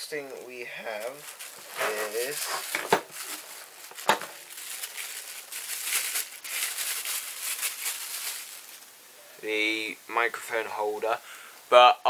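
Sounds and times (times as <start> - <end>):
packaging crinkling and rustling: 0.1 - 8.9.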